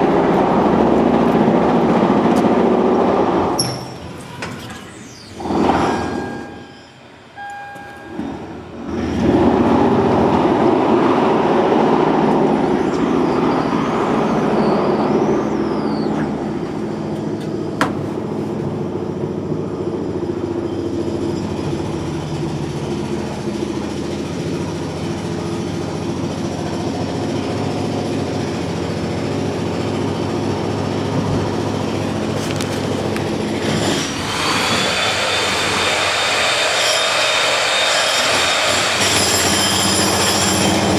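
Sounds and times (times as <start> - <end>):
high steady whine: 0.0 - 9.0.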